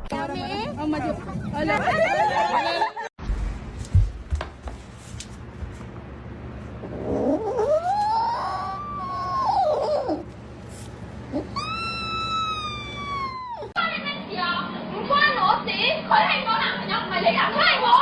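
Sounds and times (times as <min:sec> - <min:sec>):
cat yowling: 0:07.1 - 0:10.3, 0:11.3 - 0:13.8.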